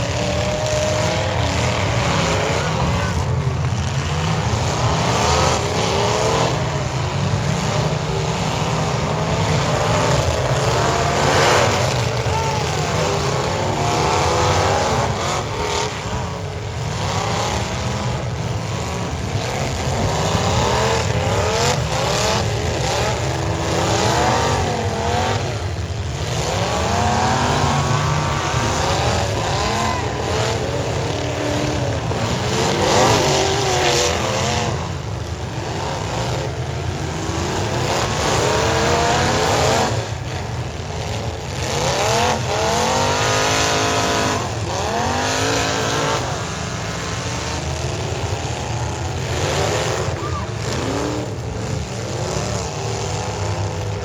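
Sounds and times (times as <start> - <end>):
car engines revving hard: 0.0 - 54.0.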